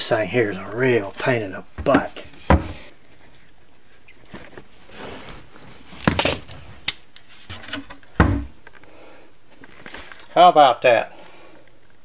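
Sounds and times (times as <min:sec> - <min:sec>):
cabinet door scraping and knocking: 0:01.8 - 0:02.8, 0:07.6 - 0:08.5.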